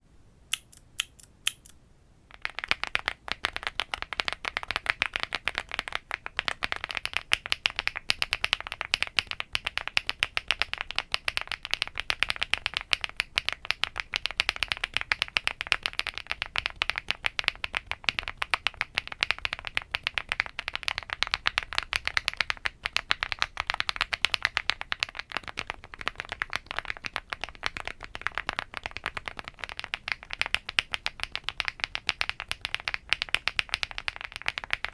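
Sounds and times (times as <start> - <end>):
mechanical keyboard typing: 0.5 - 19.7.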